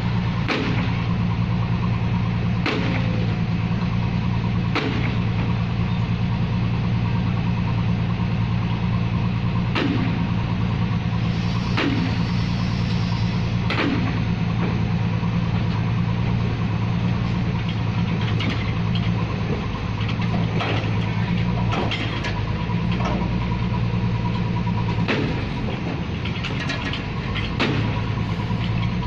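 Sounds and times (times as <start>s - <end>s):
drilling rig engine running: 0.0s - 29.0s
sharp knocks: 2.6s - 3.2s.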